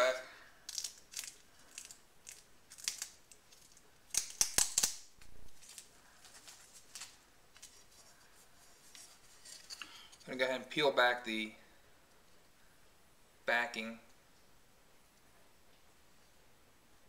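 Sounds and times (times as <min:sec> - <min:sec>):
plastic film crackling as peeled: 0:00.6 - 0:08.2.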